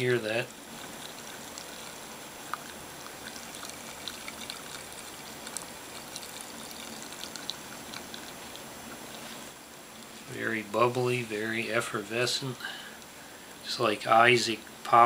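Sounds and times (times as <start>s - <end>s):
bubbles crackling: 0.0s - 9.5s
soda fizzing: 0.0s - 9.6s.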